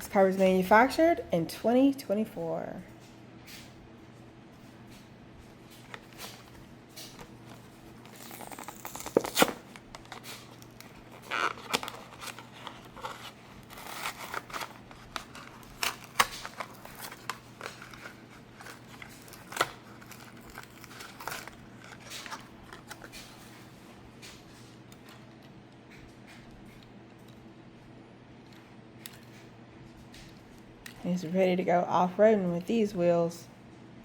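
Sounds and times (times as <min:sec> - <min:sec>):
plastic blister crinkling: 0:04.6 - 0:26.9
cardboard ripping: 0:07.5 - 0:23.0.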